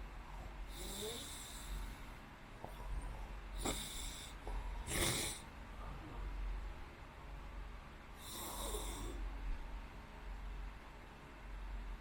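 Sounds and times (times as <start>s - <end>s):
person breathing noisily in sleep: 0.4s - 5.5s, 8.2s - 9.2s.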